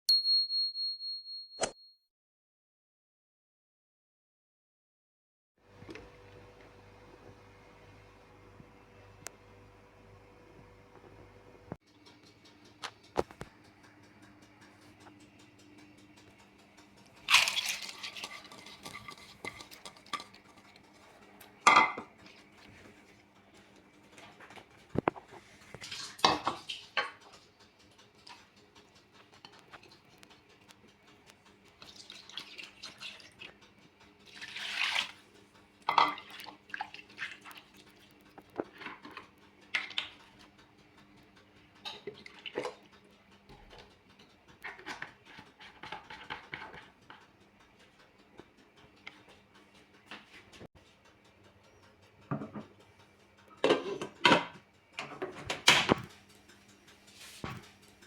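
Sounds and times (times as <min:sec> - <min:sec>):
metal pots and utensils clanking: 0:17.1 - 0:23.2, 0:23.8 - 0:30.2, 0:35.8 - 0:37.5, 0:38.4 - 0:40.2, 0:41.8 - 0:42.9, 0:43.5 - 0:47.2, 0:52.3 - 0:52.8, 0:53.5 - 0:56.1.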